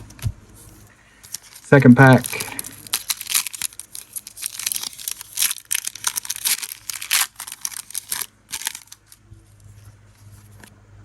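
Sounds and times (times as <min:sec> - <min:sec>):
foil wrapper tearing and crinkling: 0:01.2 - 0:09.2.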